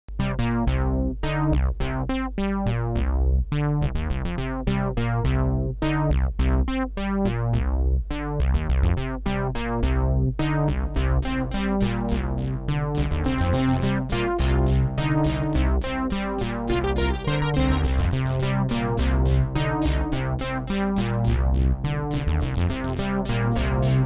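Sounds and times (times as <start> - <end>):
sustained low synth bass: 0.1 - 24.0
synthesizer plucky notes: 10.4 - 24.0.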